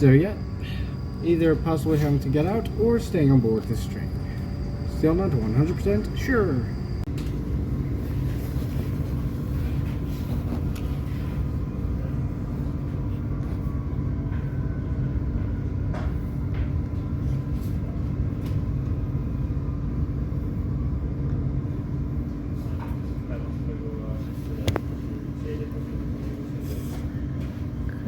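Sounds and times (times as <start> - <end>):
constant hum: 0.0 - 28.0
train running gear rumble: 0.0 - 28.0.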